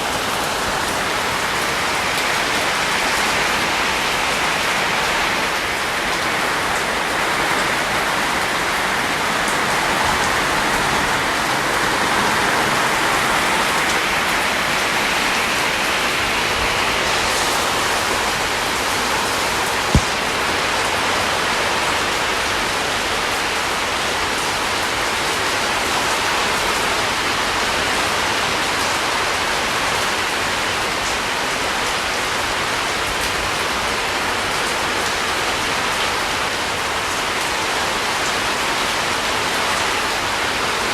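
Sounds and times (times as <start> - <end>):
heavy rain falling: 0.0 - 40.9
sharp tap: 19.9 - 20.3.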